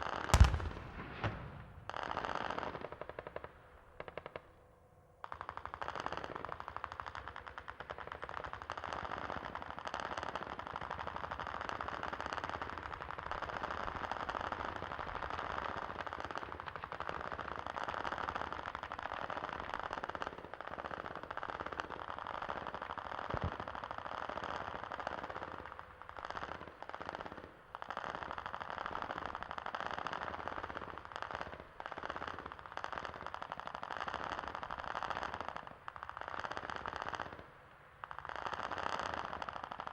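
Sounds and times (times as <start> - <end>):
automatic gunfire: 0.4 - 2.2.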